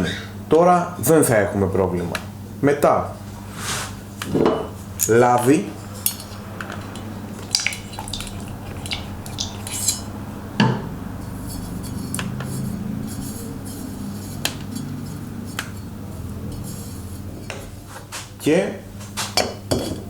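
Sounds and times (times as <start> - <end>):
low steady hum: 0.0 - 17.9
metal engine parts clinking: 5.8 - 10.2.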